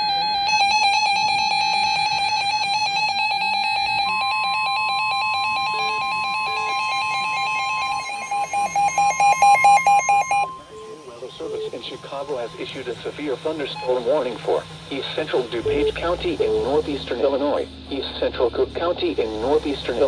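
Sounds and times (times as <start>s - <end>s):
warbling electronic alert tones: 0.0s - 17.2s
fast beeping: 0.0s - 20.0s
steady warning alarm tone: 0.0s - 20.0s.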